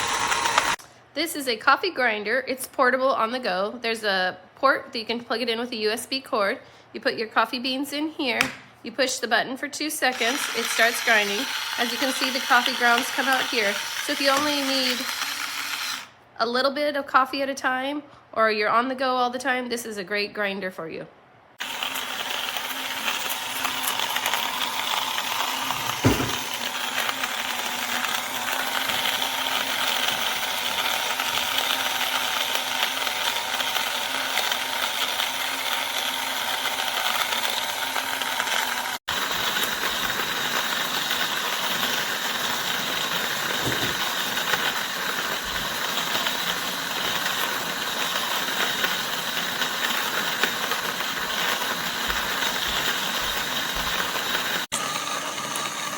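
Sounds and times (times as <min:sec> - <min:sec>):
coffee grinder grinding beans: 0:00.0 - 0:00.8, 0:10.0 - 0:16.1, 0:21.6 - 0:55.9.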